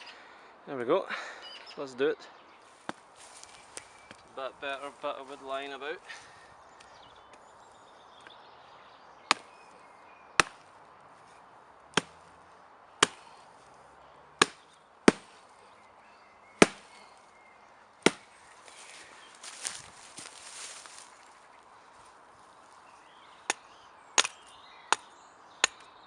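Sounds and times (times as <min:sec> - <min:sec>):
wood being split: 0:14.4 - 0:15.4, 0:16.6 - 0:17.0, 0:18.0 - 0:18.3
brief scuffling: 0:18.7 - 0:21.2.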